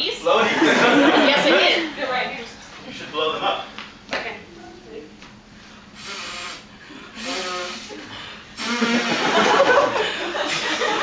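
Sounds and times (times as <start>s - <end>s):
audience laughter: 0.3s - 2.0s, 8.0s - 11.0s
vocal inflating sound effect: 6.0s - 9.5s.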